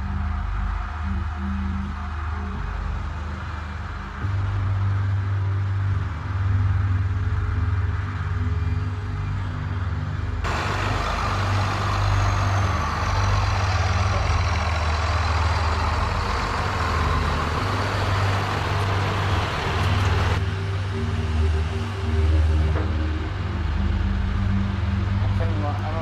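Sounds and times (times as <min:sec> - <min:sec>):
diesel engine running: 0:00.0 - 0:26.0
loud rushing hiss: 0:10.5 - 0:20.4.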